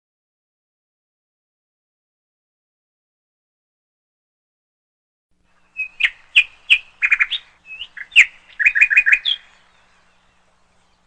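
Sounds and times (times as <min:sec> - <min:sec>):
bird chirping: 0:05.5 - 0:11.0.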